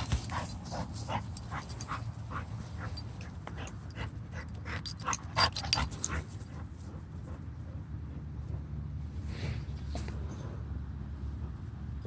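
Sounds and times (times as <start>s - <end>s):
dog panting: 0.0s - 8.6s.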